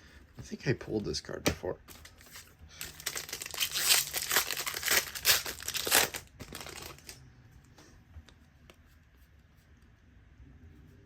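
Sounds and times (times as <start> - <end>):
foil wrapper tearing and crinkling: 2.0 - 7.2.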